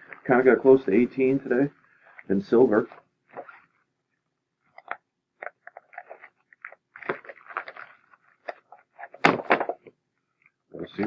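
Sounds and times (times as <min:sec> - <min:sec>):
wrapping crinkling: 0:05.4 - 0:09.7.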